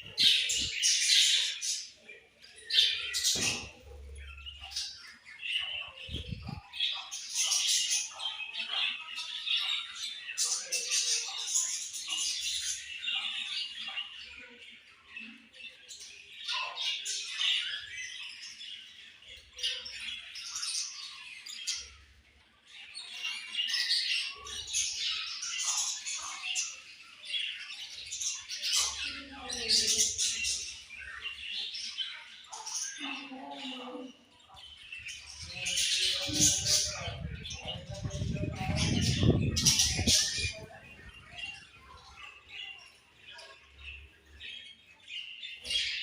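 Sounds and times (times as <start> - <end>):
budgerigars chirping: 34.4 - 46.0.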